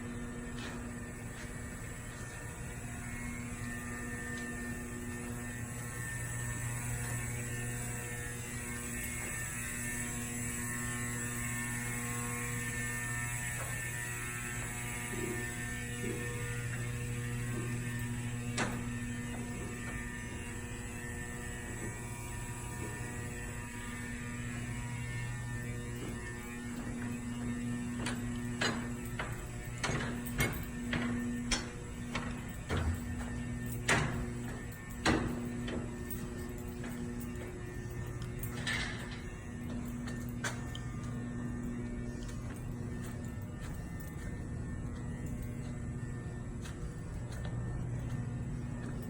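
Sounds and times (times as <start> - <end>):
electrical hum: 0.0 - 49.0
sharp clicks and knocks: 28.0 - 37.0.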